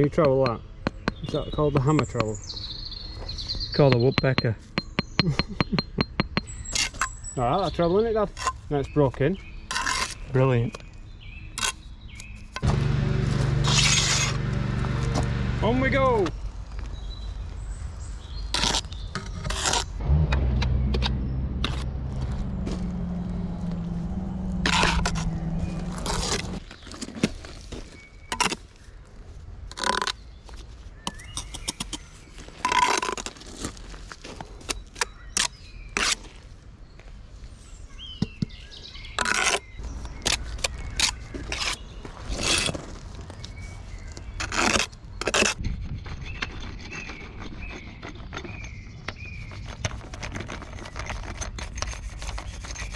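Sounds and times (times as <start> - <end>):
trowel scraping and tapping brick: 0.0 - 2.4, 3.8 - 7.2, 9.7 - 10.8, 24.6 - 25.4, 32.6 - 33.4, 39.2 - 41.8, 44.4 - 52.9
low steady drone: 12.6 - 16.3, 20.0 - 26.6.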